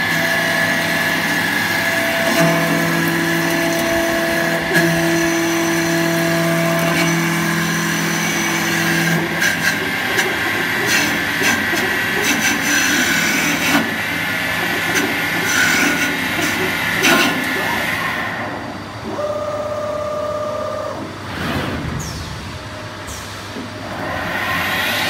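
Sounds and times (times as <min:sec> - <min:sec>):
rough machining noise: 0:00.1 - 0:18.6.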